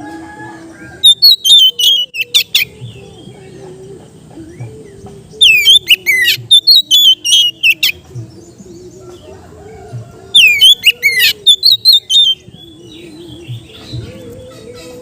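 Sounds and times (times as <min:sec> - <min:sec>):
bird singing whistled notes: 0:00.8 - 0:03.6, 0:04.4 - 0:09.4, 0:10.4 - 0:14.9
faint low wavering hum: 0:07.5 - 0:10.3.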